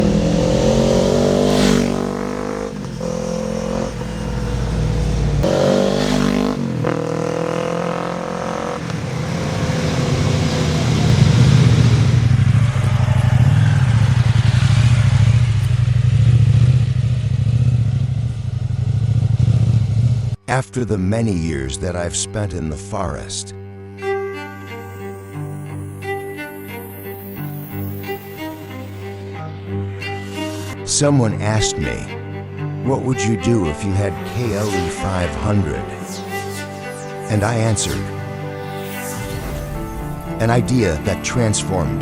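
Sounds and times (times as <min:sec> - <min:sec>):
motorcycle engine revving: 0:00.0 - 0:20.4.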